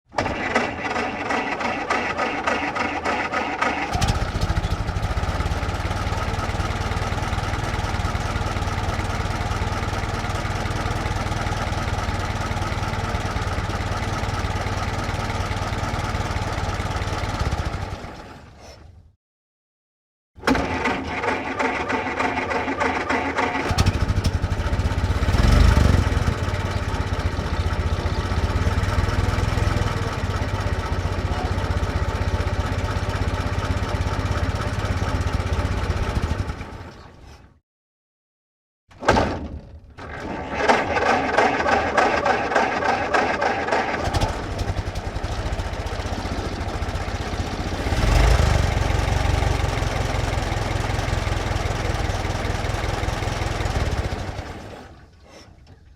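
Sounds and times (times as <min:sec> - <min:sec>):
truck engine idling and revving: 0:00.3 - 0:18.3, 0:20.6 - 0:36.9, 0:40.6 - 0:55.4.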